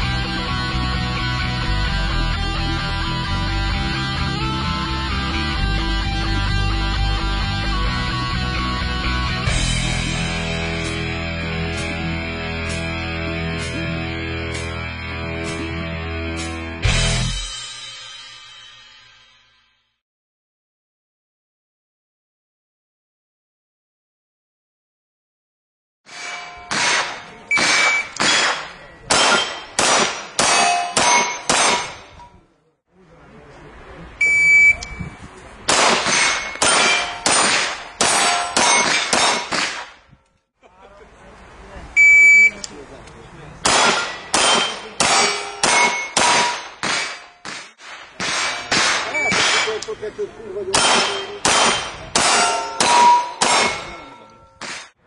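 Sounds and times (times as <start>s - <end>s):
gunshots: 26.1s - 32.2s, 35.7s - 40.0s, 43.6s - 50.0s, 50.7s - 54.9s
metallic clang of steel targets: 26.1s - 32.4s, 35.7s - 40.2s, 43.6s - 50.0s, 50.7s - 55.0s
handgun shots: 26.7s - 32.2s, 35.7s - 40.0s, 43.6s - 49.9s, 50.8s - 54.0s, 54.6s - 54.9s.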